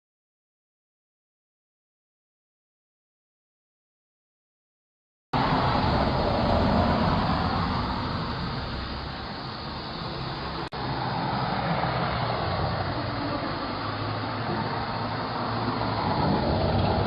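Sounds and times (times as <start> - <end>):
road traffic passing: 5.4 - 17.0.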